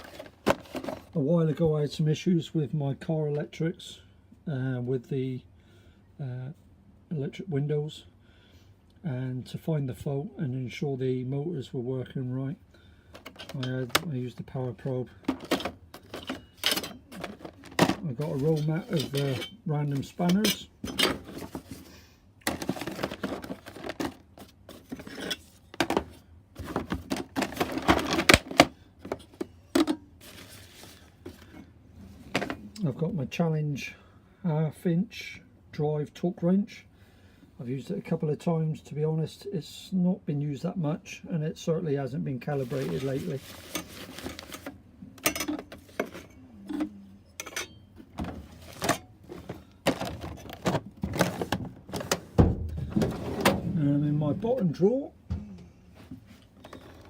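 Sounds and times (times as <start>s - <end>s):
rustling: 30.2s - 31.5s, 42.6s - 44.8s.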